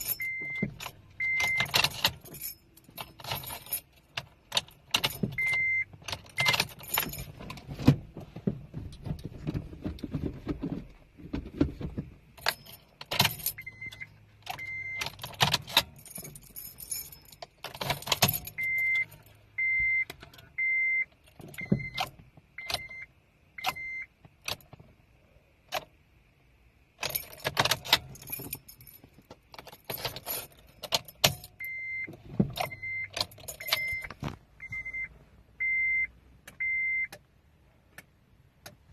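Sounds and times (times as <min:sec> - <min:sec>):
car keys jangling: 0:00.0 - 0:08.2, 0:12.0 - 0:23.0, 0:23.6 - 0:24.9, 0:26.9 - 0:35.0
short high beeps: 0:32.7 - 0:37.1.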